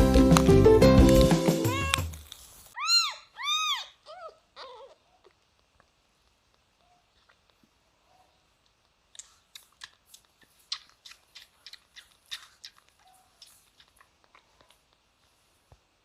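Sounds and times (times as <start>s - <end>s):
pet chewing crunchy food: 9.2s - 15.2s.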